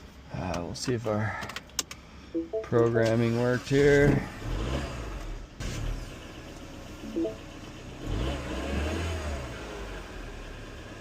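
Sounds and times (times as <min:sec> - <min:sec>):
short beep: 0:02.4 - 0:02.8, 0:07.1 - 0:07.4
car engine starting and idling: 0:03.0 - 0:11.0.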